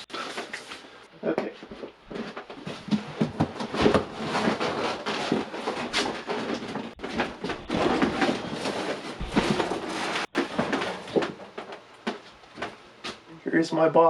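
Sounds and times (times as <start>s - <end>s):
cardboard scraping and rustling: 2.1s - 11.7s.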